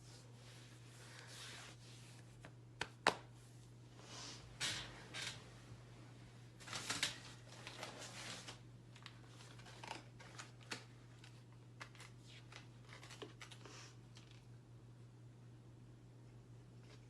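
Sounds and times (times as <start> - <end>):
paper packaging rustling: 6.6 - 14.4.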